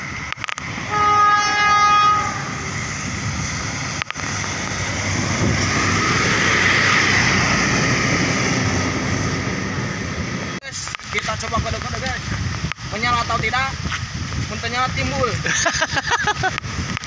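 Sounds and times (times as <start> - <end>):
rushing noise: 0.0 - 17.0
bus horn steady note: 0.9 - 2.8.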